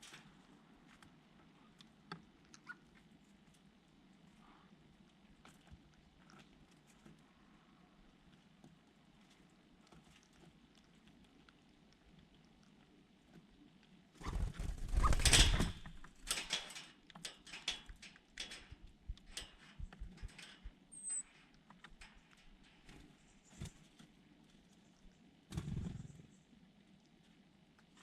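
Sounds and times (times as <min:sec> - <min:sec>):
bird wings fluttering: 0:14.2 - 0:16.3, 0:25.5 - 0:26.2
high bird chirp: 0:20.9 - 0:21.3.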